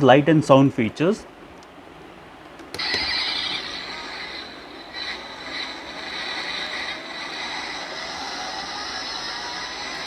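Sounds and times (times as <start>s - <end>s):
toy engine sound effect: 2.8s - 10.0s.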